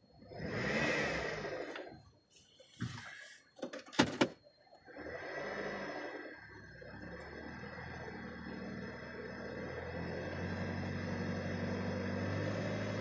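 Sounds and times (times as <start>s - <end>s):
car engine revving: 0.2s - 2.0s, 4.9s - 13.0s.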